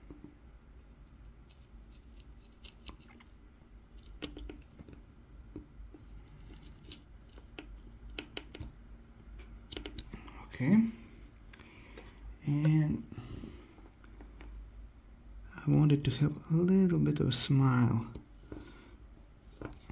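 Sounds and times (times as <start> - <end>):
knife scratching wood: 0.8 - 3.3.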